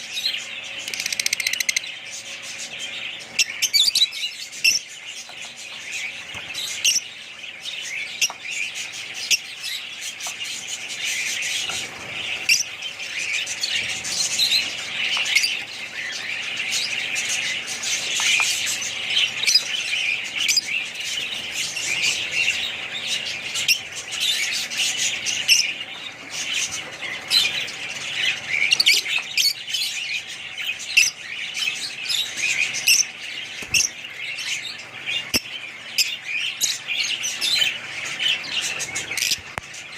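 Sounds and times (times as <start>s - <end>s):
parrots chattering: 0.0s - 39.9s.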